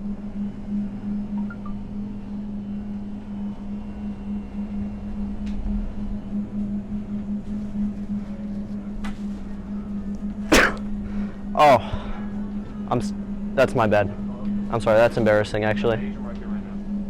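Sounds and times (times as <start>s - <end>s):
low pulsing hum: 0.0s - 17.0s
man fake sneezing: 10.5s - 10.9s.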